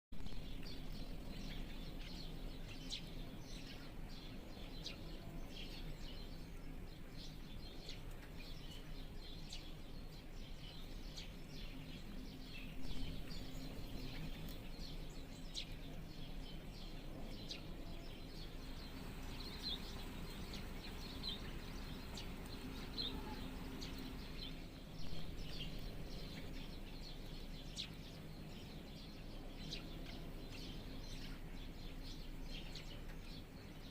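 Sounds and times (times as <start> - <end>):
low background hum: 0.2 - 33.9
thrushes chirping: 7.9 - 33.9.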